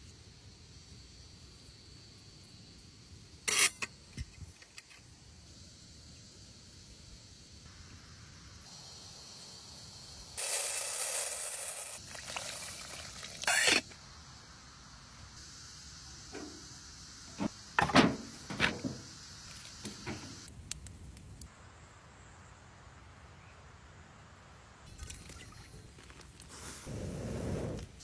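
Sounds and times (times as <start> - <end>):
hissing pour: 11.1 - 13.6
water pouring and splashing: 12.0 - 13.6, 24.9 - 26.5.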